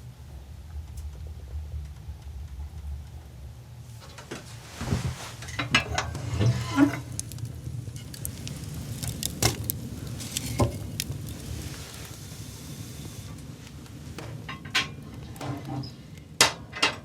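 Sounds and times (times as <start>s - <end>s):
small hard objects clinking: 5.6s - 12.3s.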